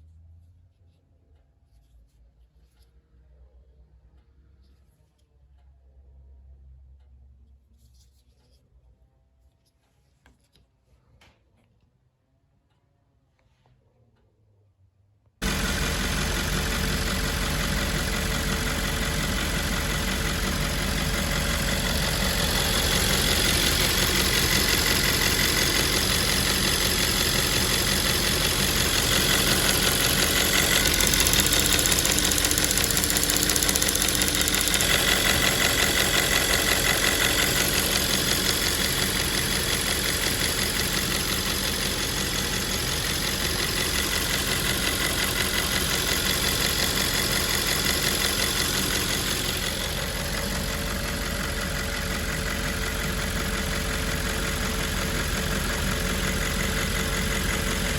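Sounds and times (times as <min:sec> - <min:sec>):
car engine idling: 0:15.4 - 0:57.9.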